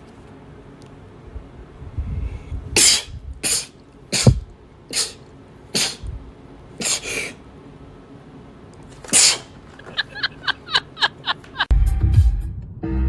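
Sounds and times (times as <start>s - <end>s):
woman sneezing: 5.8s - 6.1s, 9.0s - 9.6s.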